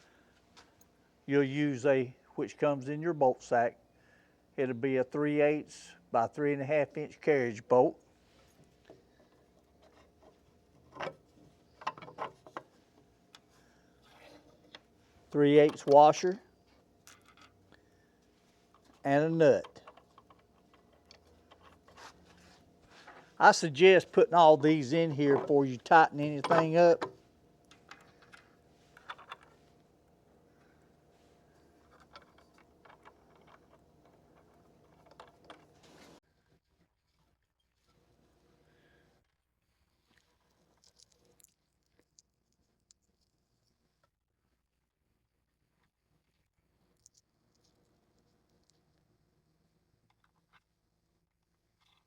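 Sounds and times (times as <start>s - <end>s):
bolts and hardware clicking: 9.8s - 12.7s, 15.5s - 16.3s, 18.8s - 22.0s, 24.6s - 29.9s.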